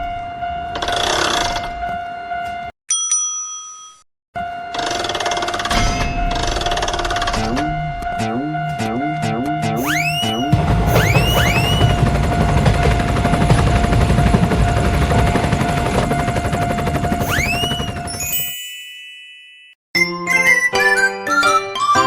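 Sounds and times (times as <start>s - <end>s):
tinkling chime melody: 2.9s - 4.0s, 9.8s - 12.0s, 17.2s - 22.0s
springy cartoon jump glides: 4.8s - 12.0s
loud rumbling clatter: 10.5s - 17.2s.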